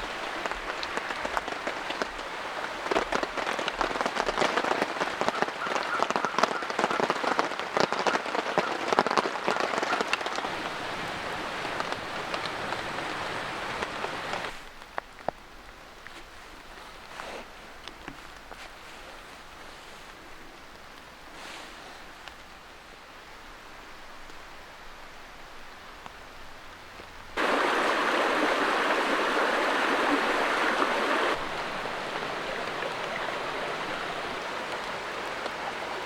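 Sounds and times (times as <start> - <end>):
rain pattering: 0.0 - 16.8, 26.9 - 36.0.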